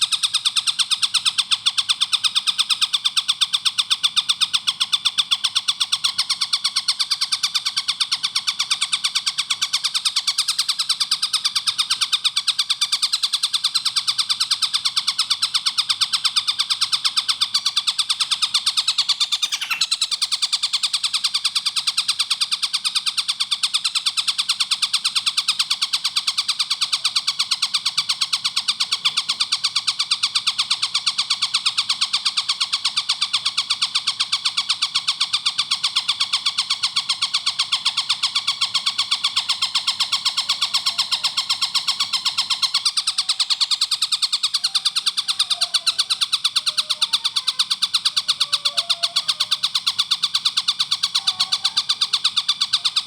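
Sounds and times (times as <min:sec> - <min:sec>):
kingfisher calling high notes: 0:19.2 - 0:20.0, 0:44.5 - 0:49.8.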